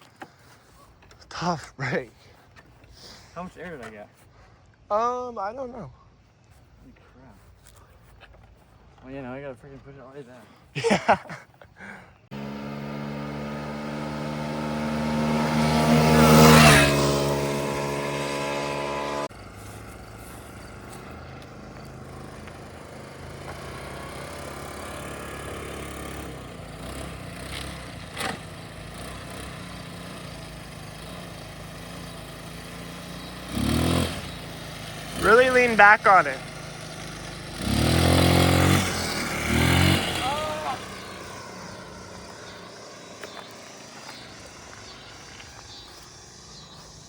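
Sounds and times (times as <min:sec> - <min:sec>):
faint steady engine: 0:11.8 - 0:47.0
scooter engine passing by: 0:12.3 - 0:47.0.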